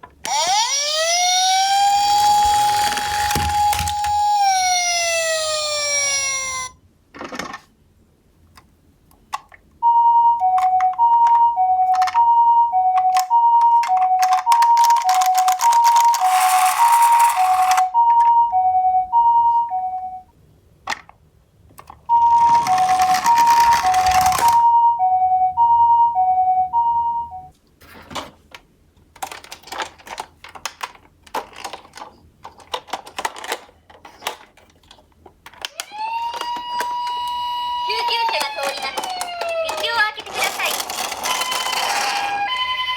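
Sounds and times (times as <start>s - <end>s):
toy cars clicking and knocking: 0.0s - 7.7s, 13.0s - 17.8s, 21.8s - 24.6s, 29.1s - 37.3s, 37.9s - 42.7s
toy cars rolling down a slope: 0.3s - 6.7s, 14.8s - 17.8s, 22.3s - 24.6s, 37.9s - 42.9s
two-tone ambulance siren: 0.3s - 6.8s, 9.8s - 20.3s, 22.1s - 27.5s, 35.8s - 40.0s, 41.2s - 42.9s.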